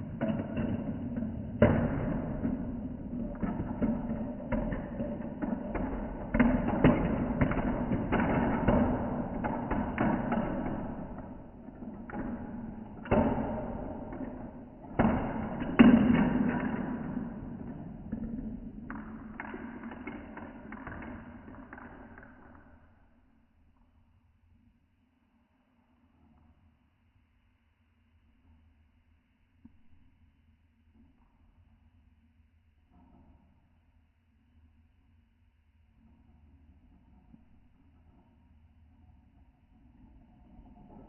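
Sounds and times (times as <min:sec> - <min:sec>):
loud marble clacks: 0:00.0 - 0:22.9
marbles rolling on plastic track: 0:00.2 - 0:22.7
marbles clicking and knocking: 0:01.6 - 0:11.3.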